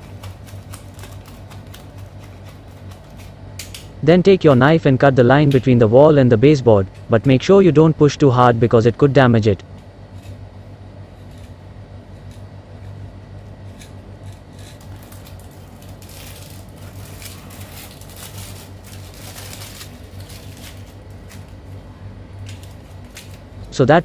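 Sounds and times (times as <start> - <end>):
utility knife cutting wallpaper: 0.0 - 3.6, 10.0 - 21.6
steady low hum: 0.0 - 24.0.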